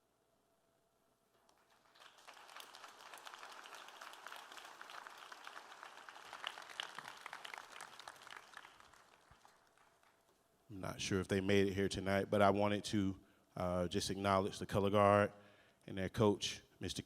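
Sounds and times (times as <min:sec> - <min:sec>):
audience applauding: 0:01.5 - 0:10.2.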